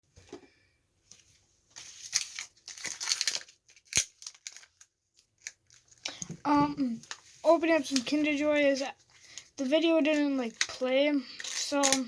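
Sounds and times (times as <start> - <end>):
foil wrapper crinkling and tearing: 1.8 - 6.2, 9.2 - 12.0.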